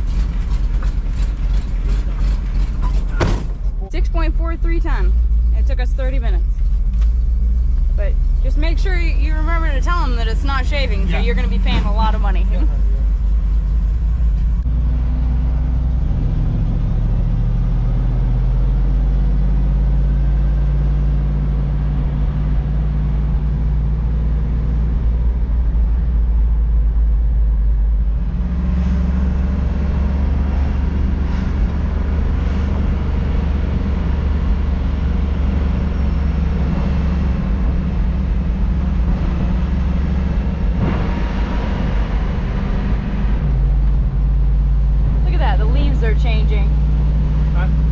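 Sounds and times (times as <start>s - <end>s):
truck engine and road drone: 0.0s - 47.9s.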